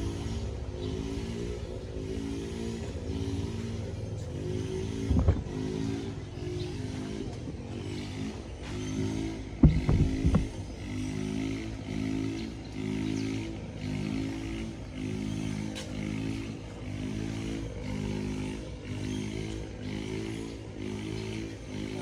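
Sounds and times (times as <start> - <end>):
engine running with pulsing note: 0.0 - 22.0.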